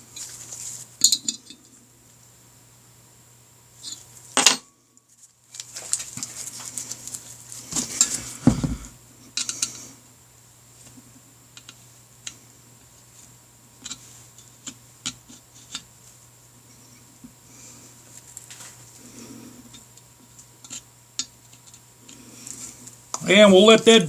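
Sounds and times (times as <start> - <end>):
loud knock: 8.4 - 8.9.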